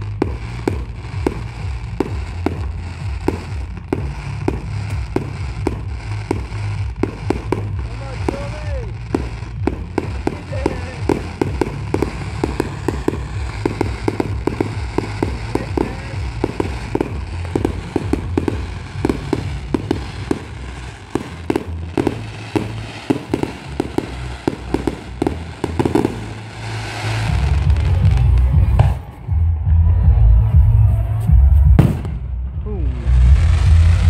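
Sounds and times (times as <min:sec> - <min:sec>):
fireworks crackling pops: 0:00.0 - 0:29.2, 0:31.8 - 0:32.3, 0:33.0 - 0:34.0
low rumble: 0:00.0 - 0:34.0.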